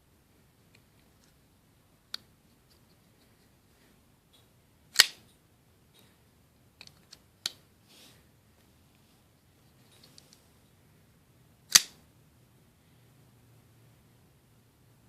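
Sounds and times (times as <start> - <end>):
soft rustle: 5.2 - 10.8.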